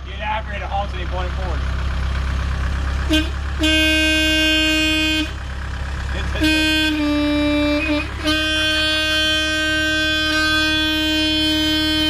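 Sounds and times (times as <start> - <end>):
horn blasts: 3.0 - 5.4, 6.2 - 12.0.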